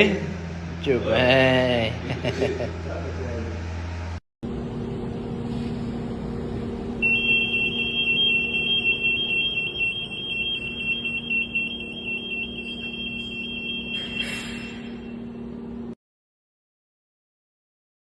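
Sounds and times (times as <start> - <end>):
fire alarm tone: 7.0 - 15.4.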